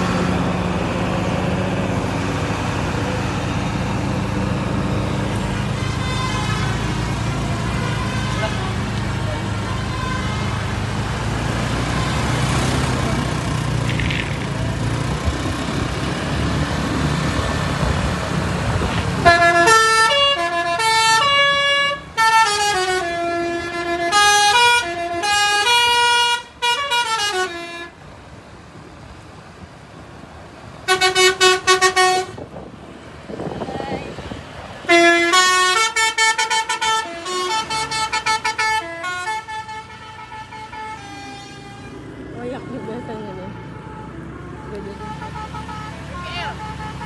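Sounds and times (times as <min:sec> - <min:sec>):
bus engine running: 0:00.0 - 0:47.0
multi-tone horn playing a tune: 0:19.2 - 0:27.9, 0:30.9 - 0:32.4.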